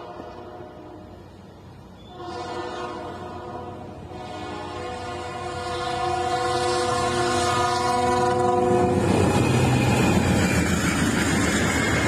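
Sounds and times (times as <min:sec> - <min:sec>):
train horn blast: 0:00.0 - 0:01.2, 0:02.0 - 0:10.2
train rumble and wheel clatter: 0:00.0 - 0:12.0.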